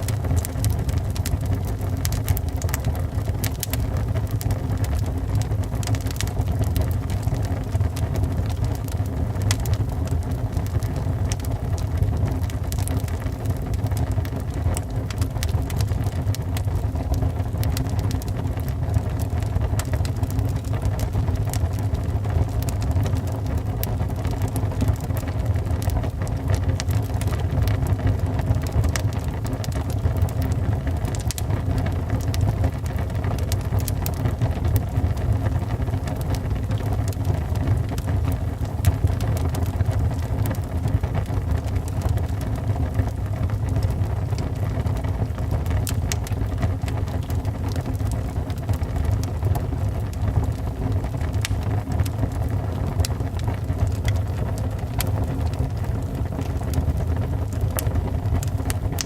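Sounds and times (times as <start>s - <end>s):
burning wood crackling and popping: 0.0s - 59.0s
low rumble of flames: 0.0s - 59.0s.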